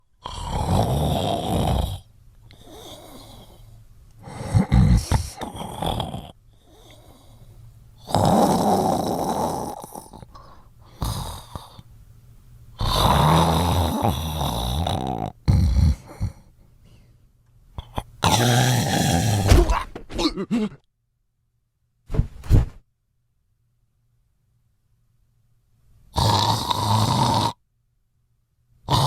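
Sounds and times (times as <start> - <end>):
loud snores: 0.2 - 7.4, 8.0 - 10.3, 10.9 - 11.8, 12.8 - 16.5, 17.8 - 19.6, 26.1 - 27.6
quiet breathing: 2.0 - 8.1, 9.7 - 12.0, 15.9 - 18.2.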